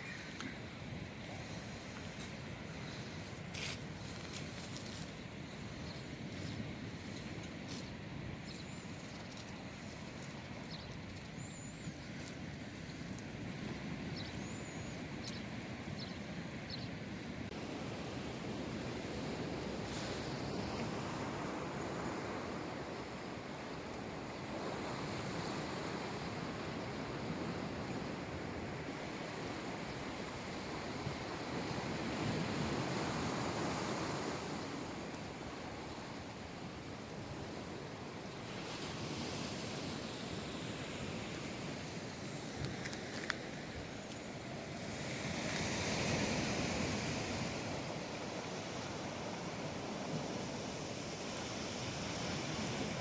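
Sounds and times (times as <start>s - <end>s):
sea waves breaking on shore: 17.3s - 53.0s.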